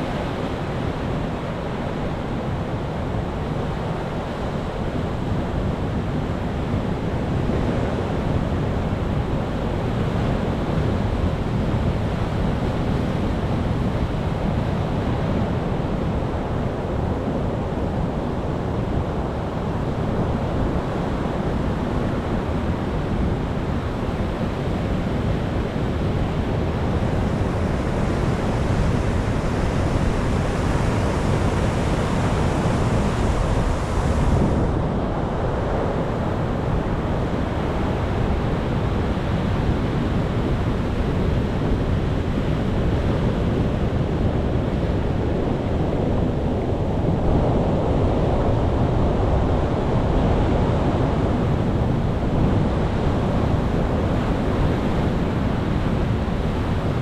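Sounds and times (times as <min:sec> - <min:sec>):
sea surf washing in: 0:25.7 - 0:40.6.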